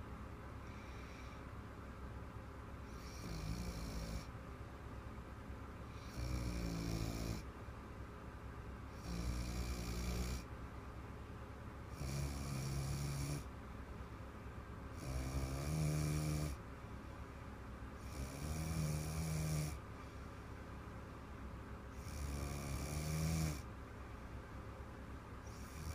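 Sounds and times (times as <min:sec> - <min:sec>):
girl snoring: 0:02.9 - 0:04.3, 0:05.9 - 0:07.4, 0:09.0 - 0:10.5, 0:12.0 - 0:13.5, 0:15.0 - 0:16.6, 0:18.0 - 0:19.8, 0:22.0 - 0:23.6.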